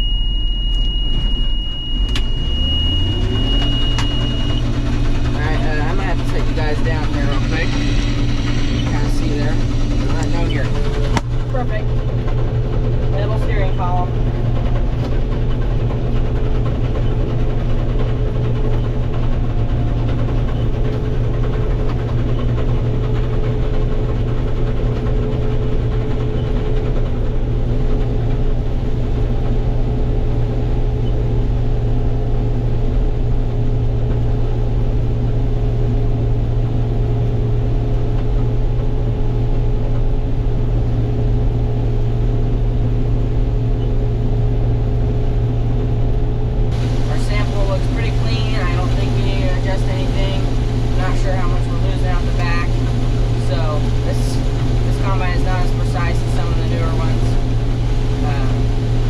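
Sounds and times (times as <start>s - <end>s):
combine harvester engine drone: 0.0s - 59.0s.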